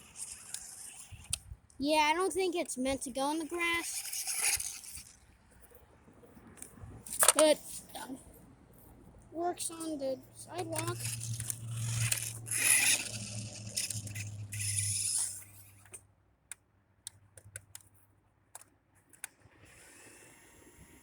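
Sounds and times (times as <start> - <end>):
rc car motor humming: 0.0 - 1.5, 2.1 - 5.2, 9.4 - 16.0.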